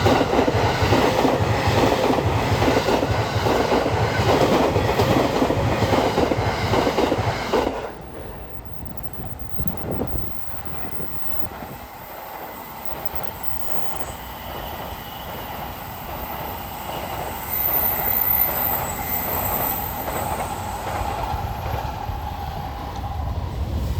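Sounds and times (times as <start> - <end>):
train wheels on rail: 0.0 - 23.9
thin high-pitched squeal: 8.2 - 11.5, 12.9 - 14.2.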